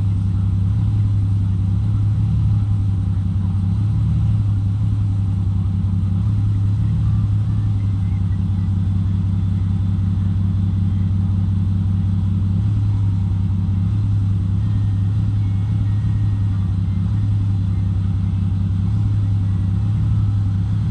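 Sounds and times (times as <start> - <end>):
car engine running low hum: 0.0 - 20.9.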